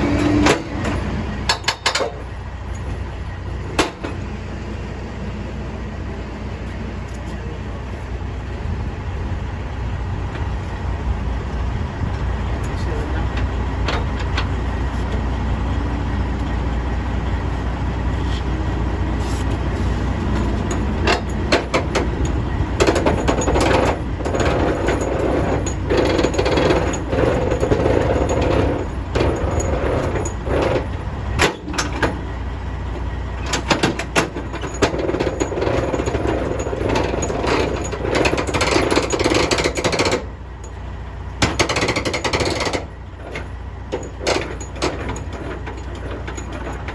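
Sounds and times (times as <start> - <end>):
low engine rumble: 0.0 - 46.9
sharp metal knocks: 0.2 - 2.2, 20.4 - 32.2, 33.4 - 40.8, 41.4 - 46.9
power tool hammering rapidly: 41.4 - 42.9.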